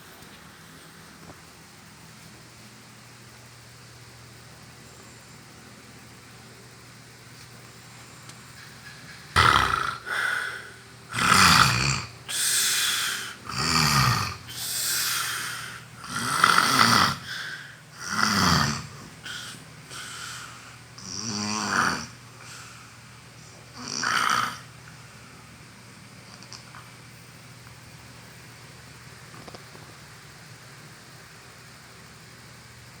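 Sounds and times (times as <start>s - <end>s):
person snoring loudly: 9.4s - 22.8s, 23.7s - 24.8s.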